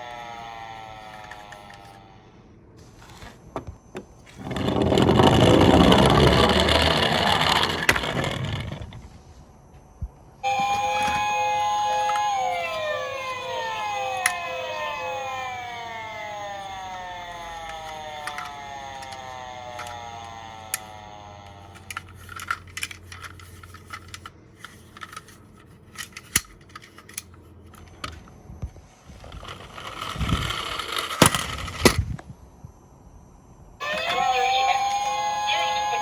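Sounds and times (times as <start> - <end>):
toy cars clicking and clattering: 0.0 - 2.2, 4.4 - 9.1, 10.5 - 28.3, 29.1 - 32.0
toy electronic siren: 0.0 - 2.4, 3.1 - 9.2, 10.4 - 23.3, 27.8 - 32.0, 33.8 - 36.0.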